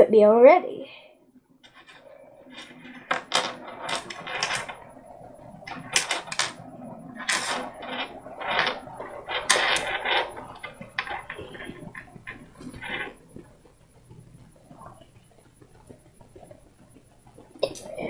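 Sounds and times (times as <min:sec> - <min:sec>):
plastic beads clicking and rattling: 0:02.6 - 0:04.8, 0:05.6 - 0:06.6, 0:07.2 - 0:13.2.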